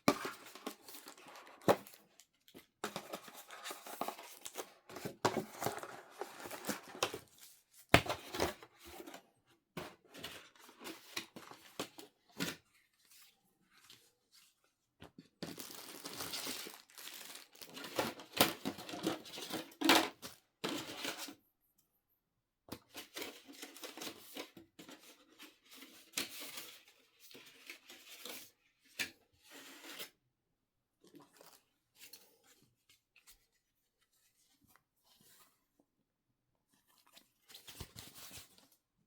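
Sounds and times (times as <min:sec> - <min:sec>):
packaging tearing and crinkling: 0:15.4 - 0:18.6.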